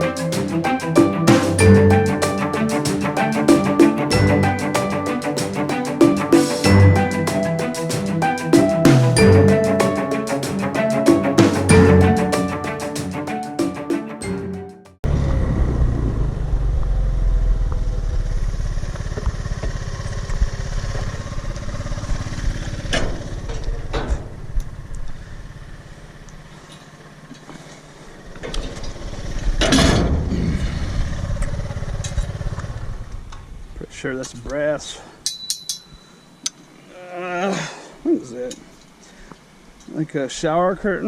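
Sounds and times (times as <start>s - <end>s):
vehicle engine rumbling: 15.0s - 33.8s.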